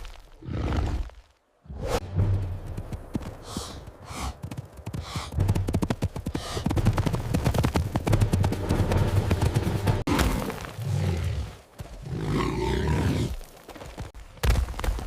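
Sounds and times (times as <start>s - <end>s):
creature hissing breaths: 3.4s - 4.4s, 5.0s - 5.4s, 6.3s - 6.7s.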